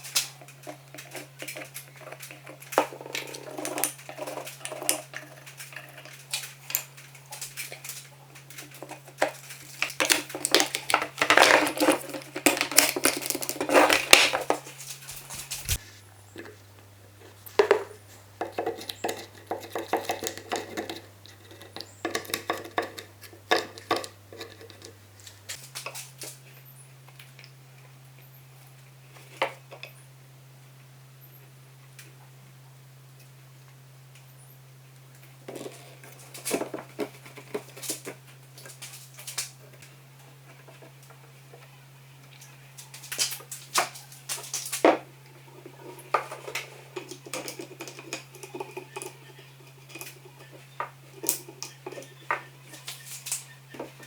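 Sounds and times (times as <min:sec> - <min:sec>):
hand tools working on wood: 0:00.0 - 0:25.6, 0:42.9 - 0:54.0.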